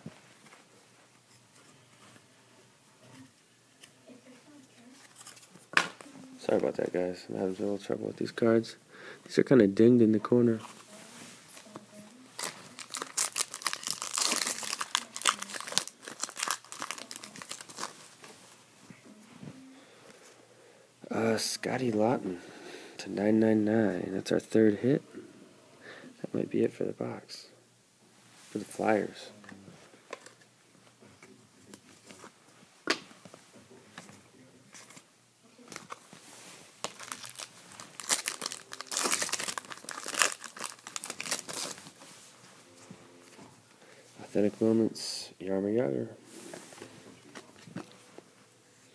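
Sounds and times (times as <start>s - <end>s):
foil wrapper crinkling and tearing: 12.4s - 18.0s, 36.8s - 42.0s.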